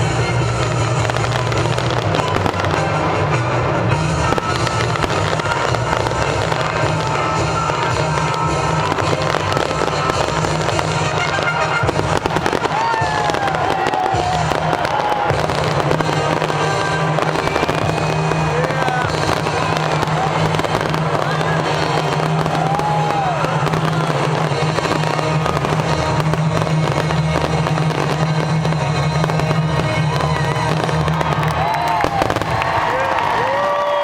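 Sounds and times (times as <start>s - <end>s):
crowd voices: 0.0s - 34.0s
fireworks exploding: 0.0s - 34.0s
music over stadium loudspeakers: 0.0s - 34.0s.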